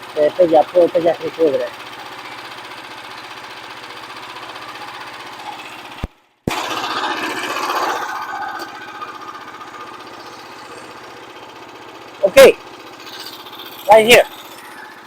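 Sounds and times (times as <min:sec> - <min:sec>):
small gasoline engine running: 0:00.0 - 0:15.0.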